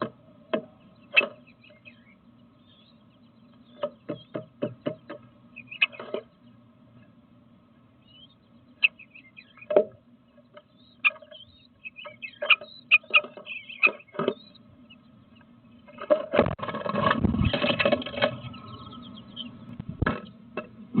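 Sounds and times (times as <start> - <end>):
faint bird chirps: 0.0 - 7.1, 7.9 - 16.0, 17.4 - 20.4
low steady hum: 0.0 - 21.0
bird tapping on wooden box: 3.8 - 6.3.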